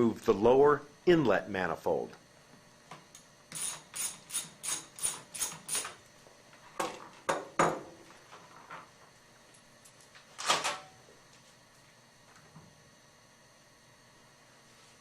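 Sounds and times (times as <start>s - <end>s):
ratchet wrench clicking: 3.5s - 5.9s.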